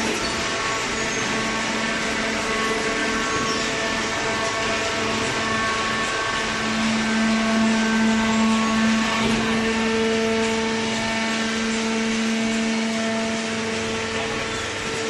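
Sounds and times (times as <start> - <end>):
shredder machine hum: 0.0 - 15.0.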